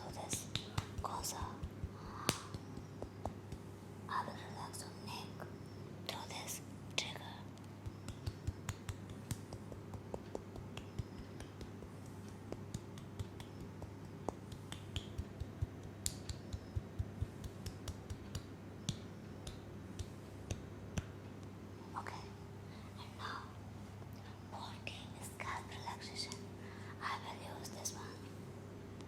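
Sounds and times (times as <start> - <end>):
steady low hum: 0.0 - 29.0
sharp clicks and taps: 7.6 - 21.1.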